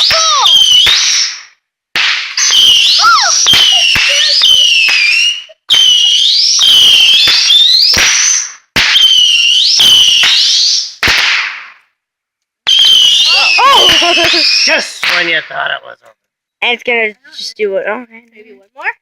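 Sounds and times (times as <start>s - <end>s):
firework pops: 0.0s - 2.6s, 3.4s - 6.0s, 6.6s - 9.2s, 9.8s - 11.9s, 15.0s - 15.6s
whistling firework shots: 0.0s - 11.9s, 12.7s - 15.6s.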